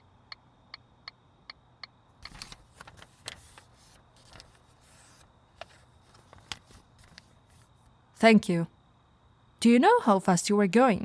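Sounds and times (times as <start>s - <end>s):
papers rustling: 2.2s - 7.8s.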